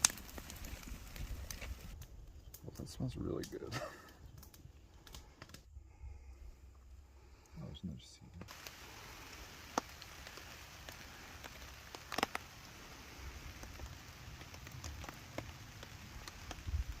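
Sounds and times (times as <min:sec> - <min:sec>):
food sizzling in hot oil: 0:08.5 - 0:17.0.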